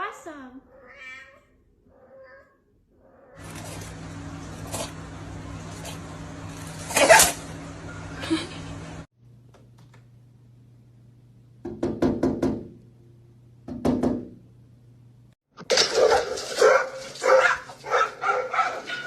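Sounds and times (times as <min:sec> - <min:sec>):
dog barking: 0:15.8 - 0:19.0.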